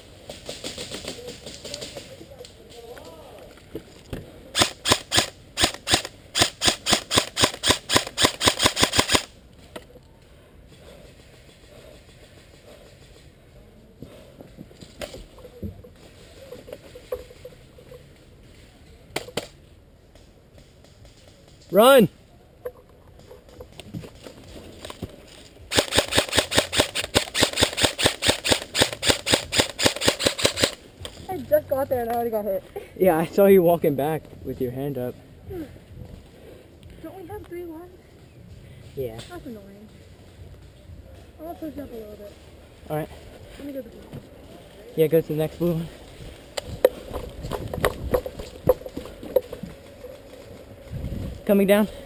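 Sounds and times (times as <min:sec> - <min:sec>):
airsoft gun shots: 0:04.6 - 0:09.3, 0:25.7 - 0:30.8.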